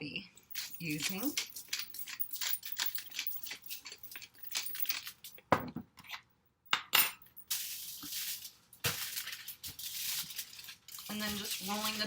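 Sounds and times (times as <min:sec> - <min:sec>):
utensils and dishes clinking: 0:00.4 - 0:06.2, 0:06.8 - 0:12.0
dry rustling hiss: 0:07.5 - 0:12.0.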